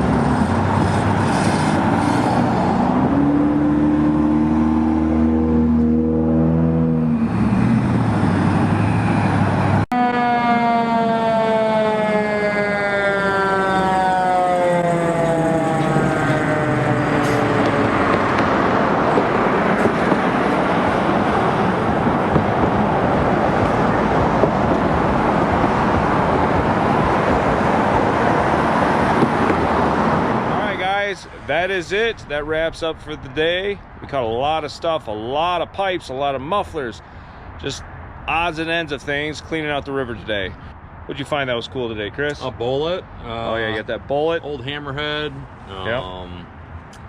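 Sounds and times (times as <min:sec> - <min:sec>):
vehicle and road noise: 0:00.0 - 0:47.0
siren winding down: 0:02.6 - 0:22.4.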